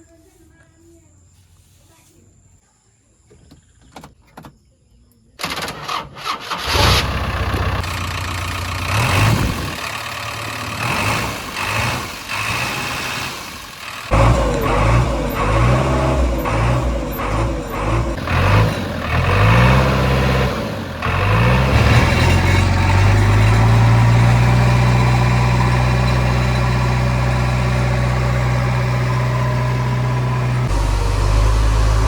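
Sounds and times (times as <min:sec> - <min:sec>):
diesel engine revving: 0:06.0 - 0:32.0.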